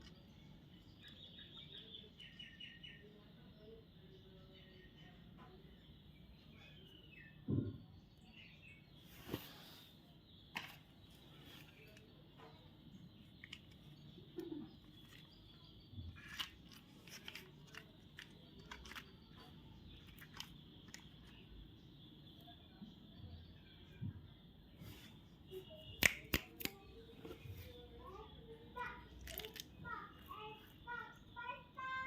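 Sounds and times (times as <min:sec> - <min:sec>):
candy packaging crinkling: 0:16.1 - 0:21.4.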